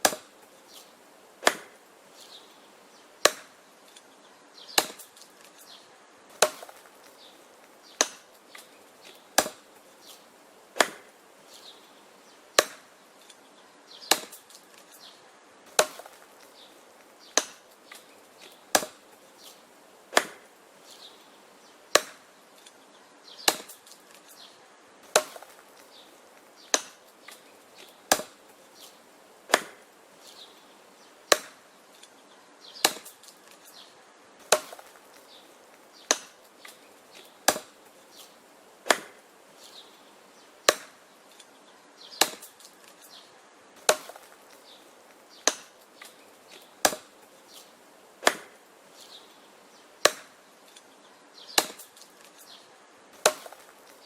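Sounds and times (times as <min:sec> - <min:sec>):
axe chopping wood: 0:00.0 - 0:00.6, 0:01.4 - 0:01.8, 0:03.2 - 0:04.0, 0:04.7 - 0:05.7, 0:06.3 - 0:07.2, 0:07.9 - 0:10.2, 0:10.8 - 0:11.2, 0:12.6 - 0:13.3, 0:14.0 - 0:14.9, 0:15.7 - 0:19.1, 0:20.1 - 0:20.5, 0:21.9 - 0:22.3, 0:23.4 - 0:24.3, 0:25.0 - 0:29.9, 0:31.3 - 0:31.6, 0:32.8 - 0:33.8, 0:34.4 - 0:39.2, 0:40.6 - 0:41.0, 0:42.1 - 0:43.0, 0:43.8 - 0:44.8, 0:45.4 - 0:48.6, 0:50.0 - 0:50.8, 0:51.5 - 0:52.4, 0:53.2 - 0:54.0.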